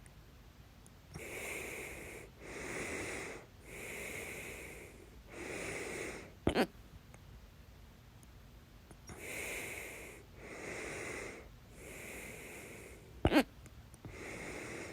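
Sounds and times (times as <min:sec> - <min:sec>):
woman breathing: 0:01.2 - 0:06.4, 0:09.1 - 0:13.2, 0:14.0 - 0:14.9
woman hiccuping: 0:06.5 - 0:06.7, 0:13.2 - 0:13.5.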